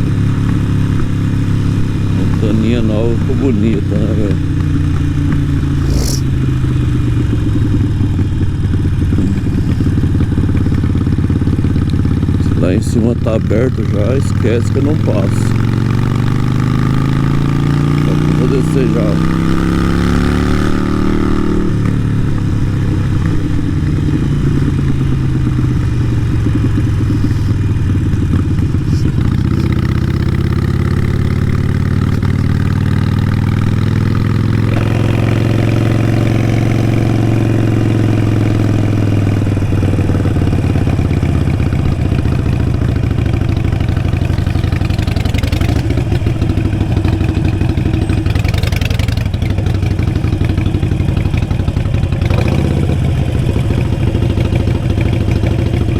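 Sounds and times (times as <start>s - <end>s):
motorcycle engine revving: 0.0s - 55.9s.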